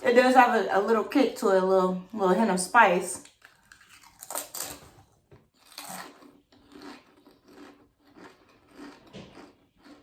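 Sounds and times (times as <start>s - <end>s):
crisps being chewed: 3.2s - 10.0s.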